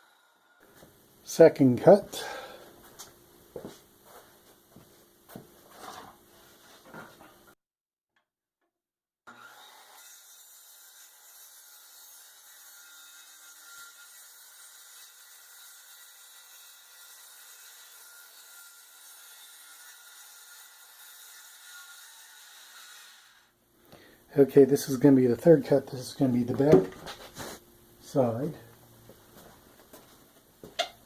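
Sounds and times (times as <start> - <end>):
saw cutting plywood: 9.3 - 23.5.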